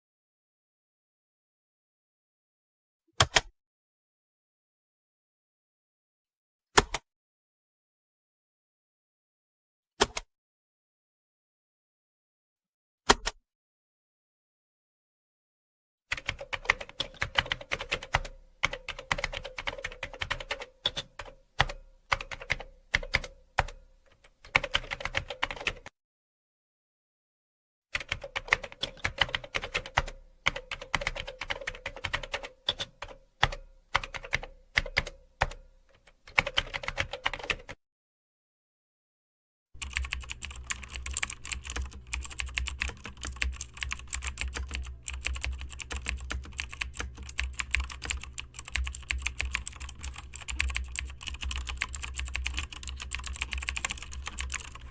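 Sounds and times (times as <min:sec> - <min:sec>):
computer keyboard typing: 0:16.1 - 0:25.9, 0:28.0 - 0:37.8, 0:39.8 - 0:54.9.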